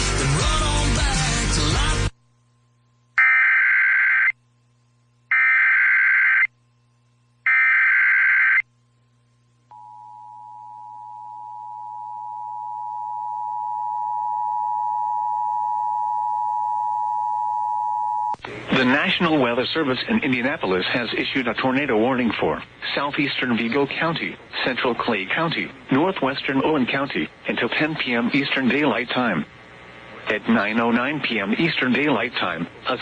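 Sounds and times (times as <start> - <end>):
music on radio: 0.0 - 2.2.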